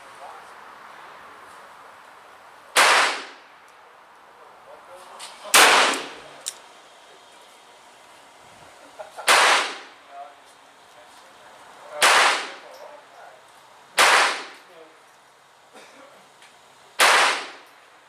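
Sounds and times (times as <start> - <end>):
handgun shots: 2.8 - 3.4, 5.6 - 6.6, 9.2 - 9.9, 12.0 - 12.7, 14.0 - 14.6, 17.0 - 17.6.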